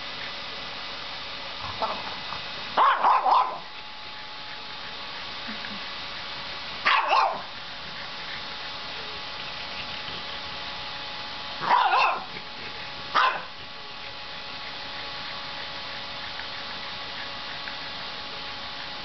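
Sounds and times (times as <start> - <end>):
dog barking: 2.8 - 3.7, 6.8 - 7.5, 11.6 - 12.4, 13.1 - 13.5.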